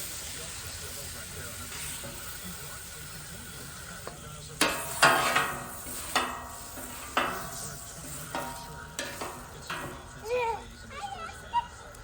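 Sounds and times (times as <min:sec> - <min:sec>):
food sizzling in a frying pan: 0:00.0 - 0:10.8
utensil striking and scraping pan: 0:04.1 - 0:10.3.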